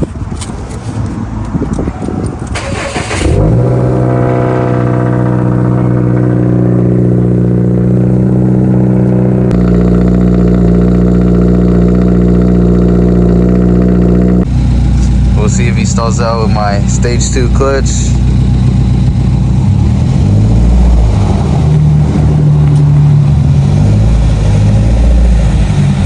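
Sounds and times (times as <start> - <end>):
car engine starting and idling: 0.1 - 26.0.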